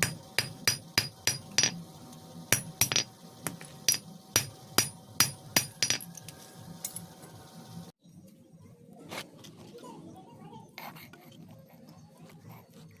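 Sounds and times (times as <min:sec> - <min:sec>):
hammer striking iron on anvil: 0:00.0 - 0:01.8, 0:02.5 - 0:06.2.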